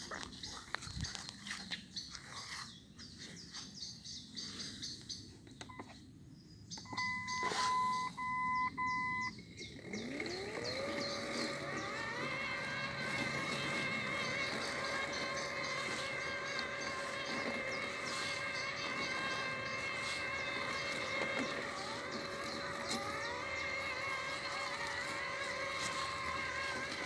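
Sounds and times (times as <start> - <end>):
appliance motor whining and humming: 6.7 - 27.0
electronic beeps: 6.8 - 9.4.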